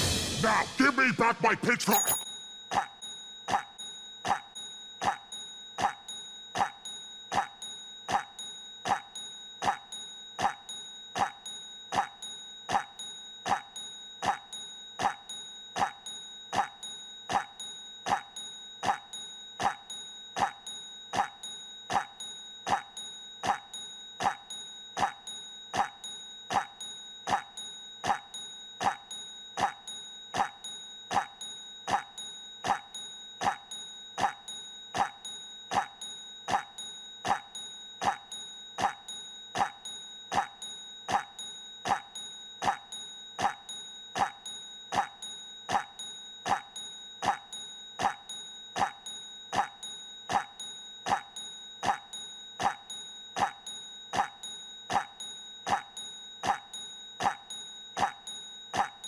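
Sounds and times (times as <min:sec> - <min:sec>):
steady high-pitched tone: 0:00.0 - 0:02.2.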